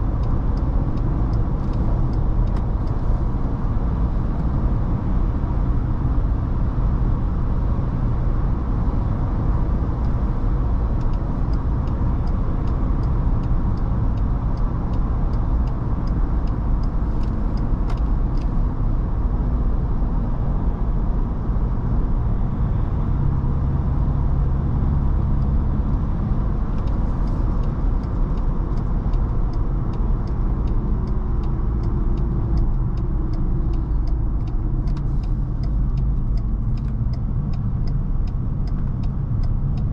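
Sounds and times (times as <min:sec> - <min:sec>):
engine and road noise rumble: 0:00.0 - 0:39.9
light regular ticking: 0:00.1 - 0:04.6, 0:08.6 - 0:20.0, 0:24.5 - 0:39.9.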